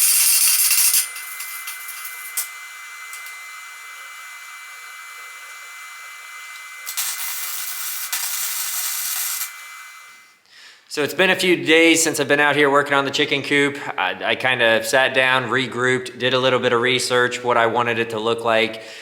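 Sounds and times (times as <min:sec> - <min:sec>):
welding arc crackling: 0:00.0 - 0:10.4.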